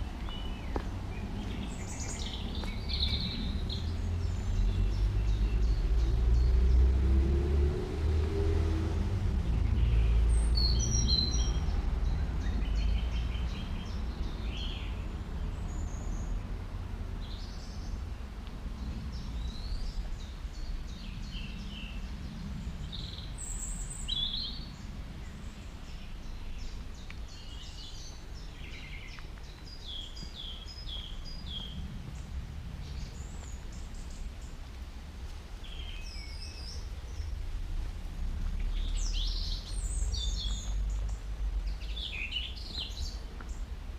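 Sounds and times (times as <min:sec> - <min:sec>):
songbirds chirping and singing: 0:00.0 - 0:43.9.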